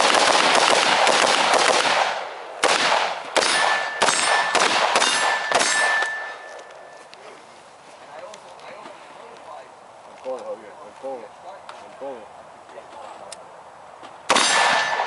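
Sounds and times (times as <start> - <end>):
rifle shots: 0.0 - 6.4, 14.3 - 15.0
metallic clang of steel target: 3.4 - 6.5, 14.3 - 15.0
high ringing of struck steel: 3.4 - 7.0, 14.3 - 15.0.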